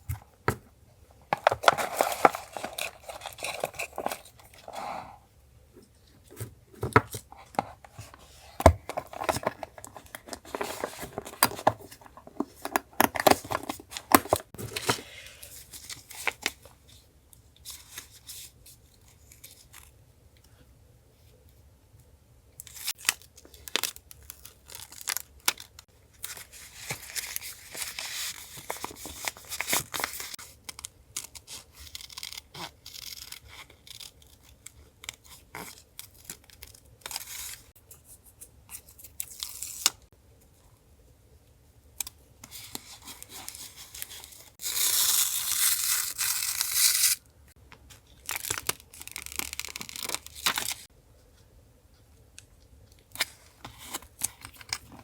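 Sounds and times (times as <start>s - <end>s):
paper rustling and crinkling: 1.3s - 4.9s, 6.3s - 16.8s, 22.8s - 30.5s.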